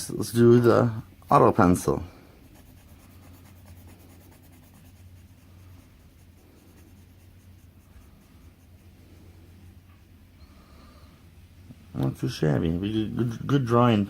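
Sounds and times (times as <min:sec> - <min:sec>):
pencil scratching on paper: 0:02.4 - 0:10.2.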